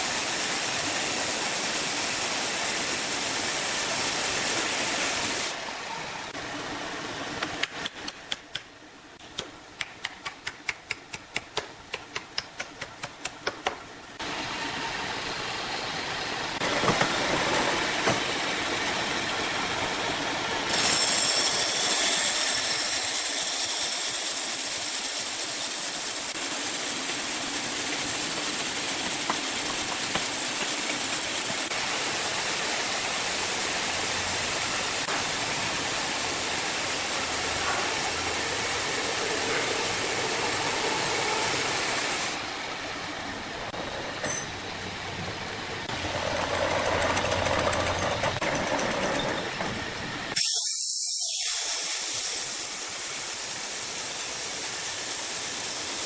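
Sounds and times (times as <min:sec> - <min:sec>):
mechanical din of machines running: 0:14.2 - 0:56.0.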